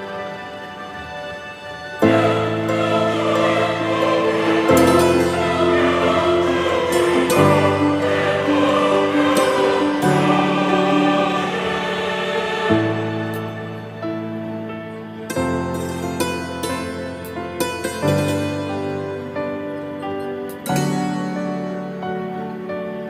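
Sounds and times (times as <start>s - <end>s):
choral music with held bass: 1.8s - 14.4s.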